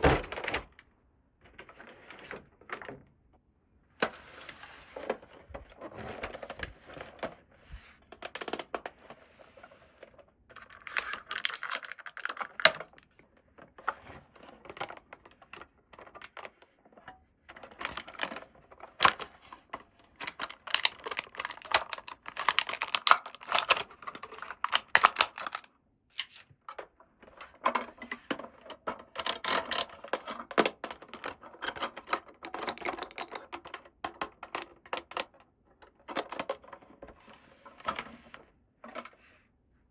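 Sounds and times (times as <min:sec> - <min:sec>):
plastic toy pieces clicking: 0:10.6 - 0:13.0, 0:17.7 - 0:19.3, 0:20.1 - 0:26.4, 0:29.1 - 0:35.3.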